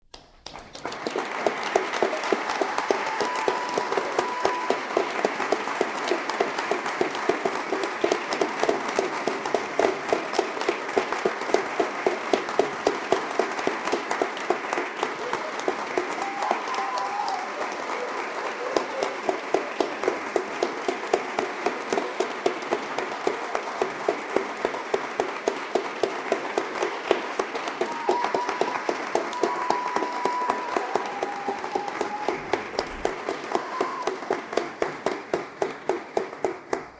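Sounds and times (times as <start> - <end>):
crowd applauding: 0.0 - 36.9.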